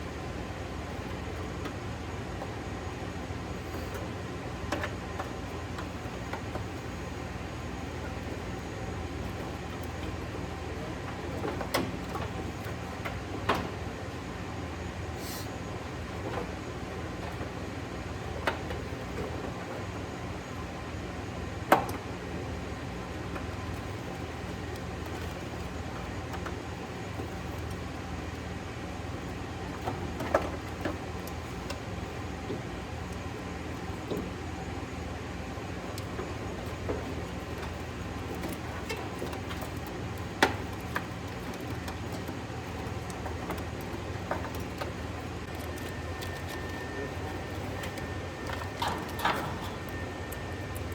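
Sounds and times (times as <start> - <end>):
steady low hum: 22.3 - 50.9.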